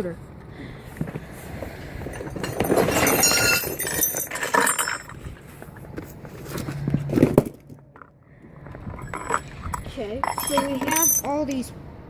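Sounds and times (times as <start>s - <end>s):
metal pieces clinking: 2.1s - 5.2s, 9.0s - 11.4s.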